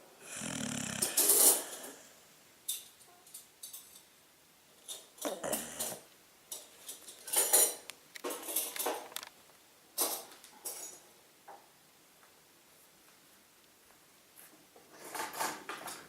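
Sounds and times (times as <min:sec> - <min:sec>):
pet snoring: 0:00.2 - 0:02.2, 0:05.2 - 0:06.1.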